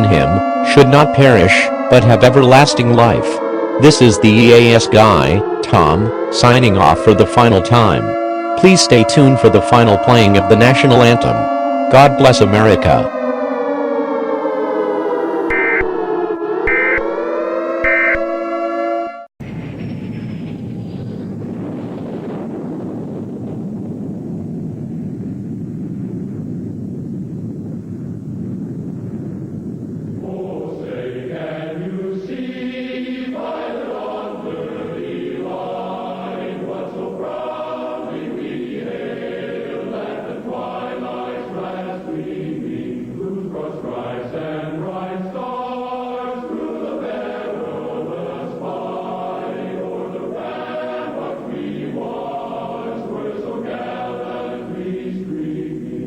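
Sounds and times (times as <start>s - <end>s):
choir singing held notes: 0.0s - 19.3s, 30.2s - 56.0s
steady low rumble: 19.4s - 33.1s, 33.7s - 56.0s.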